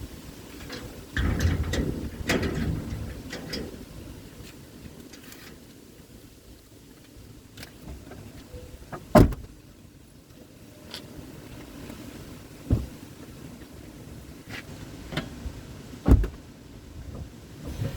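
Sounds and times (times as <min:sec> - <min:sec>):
low steady rumble: 0:00.0 - 0:17.9
suspension thud: 0:12.6 - 0:13.0, 0:16.0 - 0:16.5.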